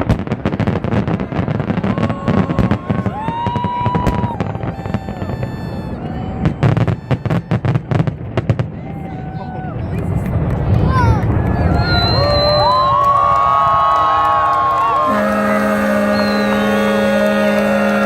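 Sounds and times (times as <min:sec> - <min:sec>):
firework whistling: 0:00.0 - 0:08.2, 0:11.5 - 0:13.0, 0:15.1 - 0:18.0
fireworks bangs and crackles: 0:00.0 - 0:15.3.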